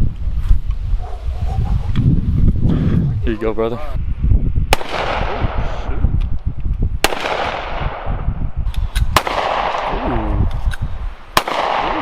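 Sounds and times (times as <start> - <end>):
loud gunshots: 4.7 - 5.6, 7.0 - 8.2, 9.1 - 10.1, 11.4 - 12.0.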